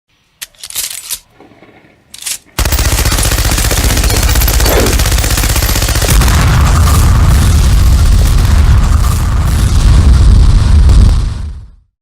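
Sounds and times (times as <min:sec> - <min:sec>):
automatic gunfire: 0:02.6 - 0:09.2.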